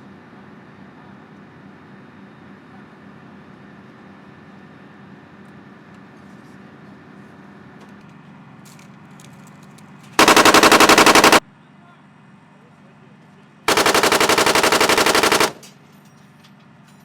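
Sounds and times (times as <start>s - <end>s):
chain gun firing burst: 10.2s - 11.4s, 13.7s - 15.7s
armored vehicle engine hum: 13.7s - 15.8s.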